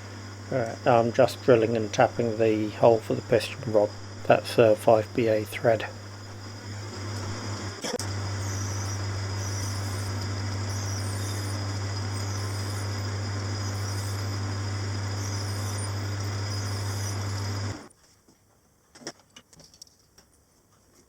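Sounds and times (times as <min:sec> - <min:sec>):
lathe humming: 0:00.0 - 0:17.9
hiss of metal cutting: 0:08.4 - 0:17.6.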